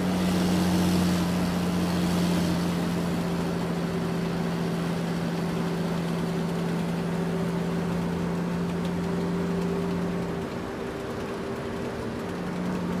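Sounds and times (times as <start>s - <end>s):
truck engine humming: 0.0s - 13.0s.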